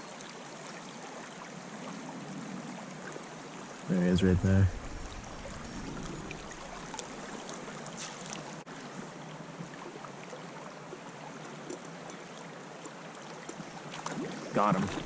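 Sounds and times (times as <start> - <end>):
creek water running: 0.0 - 15.0.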